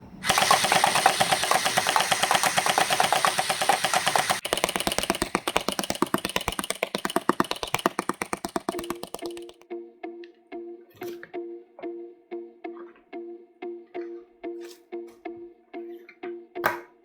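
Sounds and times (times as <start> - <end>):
gel blaster rapid clicks: 0.2 - 9.6.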